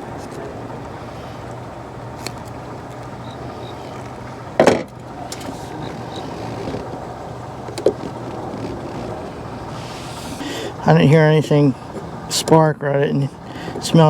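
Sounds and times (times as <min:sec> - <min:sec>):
clunking knocks: 0:00.0 - 0:10.8
fan humming: 0:00.0 - 0:14.0.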